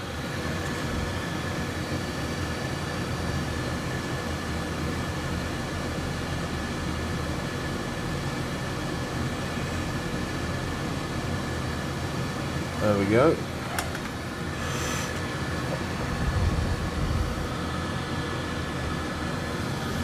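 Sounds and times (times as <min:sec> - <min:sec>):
hot air station hissing: 0:11.9 - 0:20.0.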